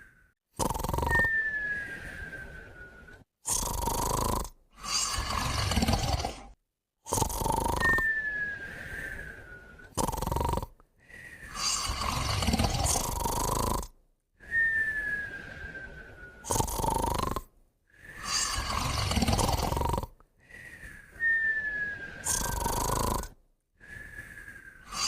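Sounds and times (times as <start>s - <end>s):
rasping snores: 0.5s - 1.5s, 3.4s - 8.2s, 9.3s - 14.6s, 16.4s - 21.4s, 22.0s - 23.4s, 24.8s - 25.0s
thin whistle on the breath: 1.0s - 3.2s, 7.6s - 9.9s, 14.4s - 17.0s, 20.4s - 23.2s, 23.8s - 25.0s.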